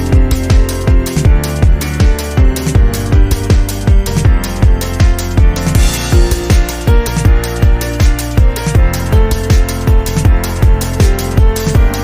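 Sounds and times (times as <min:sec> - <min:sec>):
deep kick drums: 0:00.1 - 0:11.9
held synth chords: 0:04.0 - 0:08.9.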